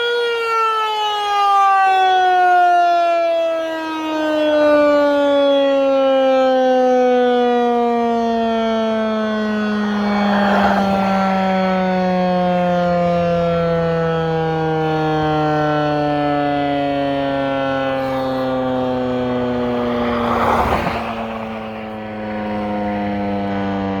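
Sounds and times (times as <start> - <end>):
warning siren winding down: 0.0 - 24.0
rush of noise: 18.6 - 23.4.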